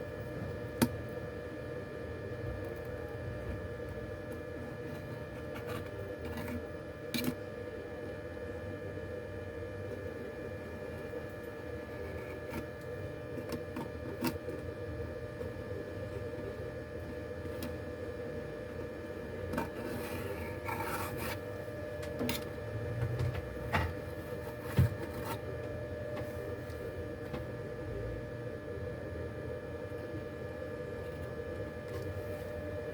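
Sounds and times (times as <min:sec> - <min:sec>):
steady hum: 0:00.0 - 0:32.9
tools scraping and rubbing: 0:19.5 - 0:21.5.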